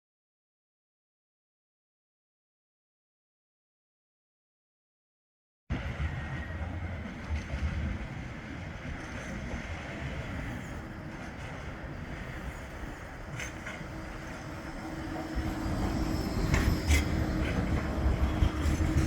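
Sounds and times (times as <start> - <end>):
tram rumbling: 5.7 - 19.0.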